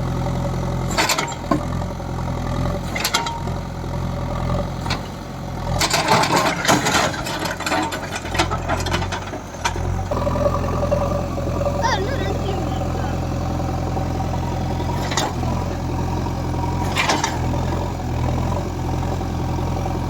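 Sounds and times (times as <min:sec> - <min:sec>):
diesel engine running: 0:00.0 - 0:20.0
metallic clanks and rattles: 0:00.9 - 0:01.7, 0:02.9 - 0:03.5, 0:05.7 - 0:10.1, 0:16.8 - 0:17.6.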